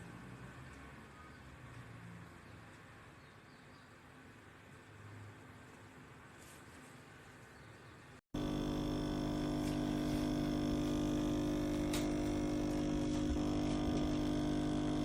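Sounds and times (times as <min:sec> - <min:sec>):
steady machine hum: 0:08.4 - 0:15.0.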